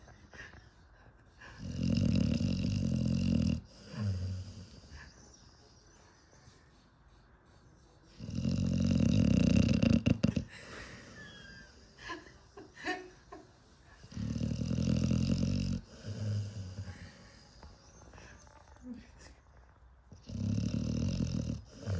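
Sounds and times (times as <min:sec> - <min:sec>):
dog snoring: 0:01.6 - 0:05.0, 0:08.2 - 0:10.5, 0:14.0 - 0:18.8, 0:20.1 - 0:21.9.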